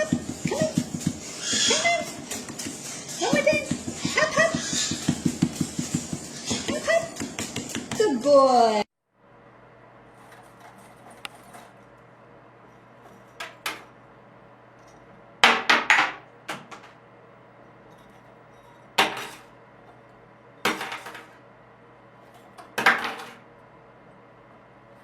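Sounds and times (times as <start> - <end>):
hard objects knocking on hard surface: 0.0 - 8.1, 15.4 - 17.0, 20.7 - 21.4, 22.8 - 23.4.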